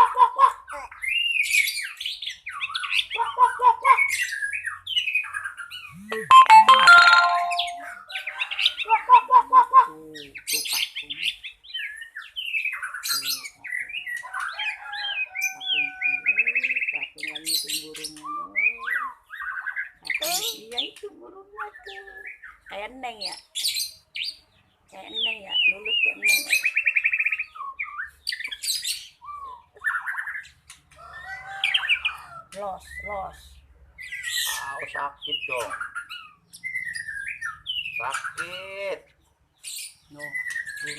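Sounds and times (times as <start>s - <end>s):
songbird singing varied song: 4.3s - 8.0s, 31.4s - 40.9s.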